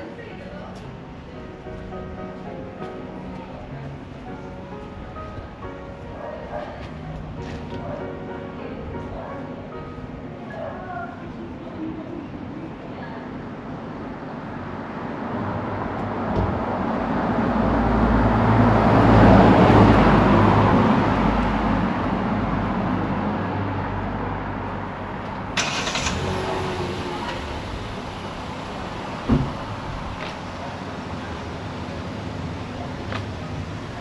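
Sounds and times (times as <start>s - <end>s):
car driving past: 15.3s - 34.0s.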